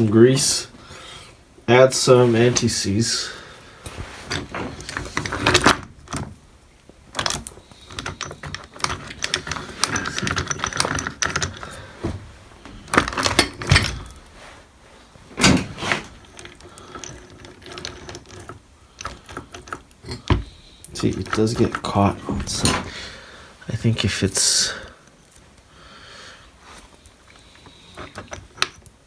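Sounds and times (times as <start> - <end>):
metallic clicking and rattling gears: 7.1 - 11.8, 15.4 - 22.9.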